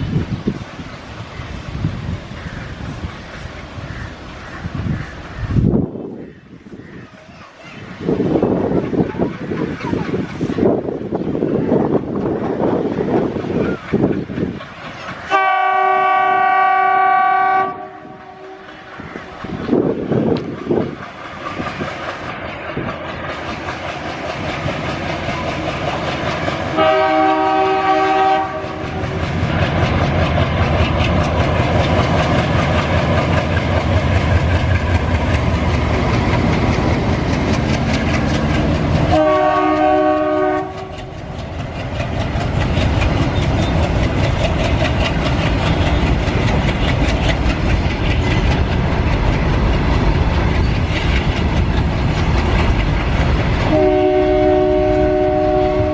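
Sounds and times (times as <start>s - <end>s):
locomotive engine running: 7.9s - 55.9s
locomotive horn blast: 15.3s - 18.7s, 26.7s - 28.9s, 39.1s - 40.9s, 53.7s - 55.9s
wagon wheels clacking over rails: 28.8s - 53.8s.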